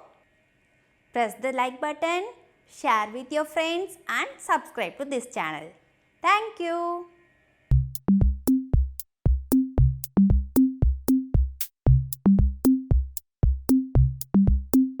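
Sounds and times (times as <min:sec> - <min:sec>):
electronic drum-machine music: 0:07.7 - 0:15.0.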